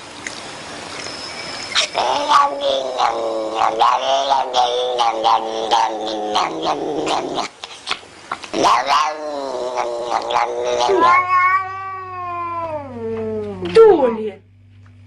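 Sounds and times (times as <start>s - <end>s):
animal screaming: 1.7s - 13.0s.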